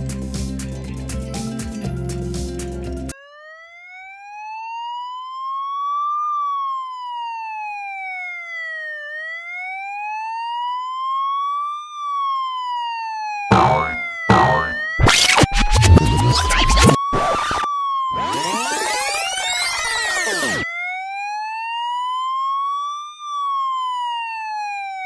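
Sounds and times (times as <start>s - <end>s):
wail siren: 3.2s - 15.1s, 17.4s - 25.0s
loud bursts of sound: 13.5s - 20.6s.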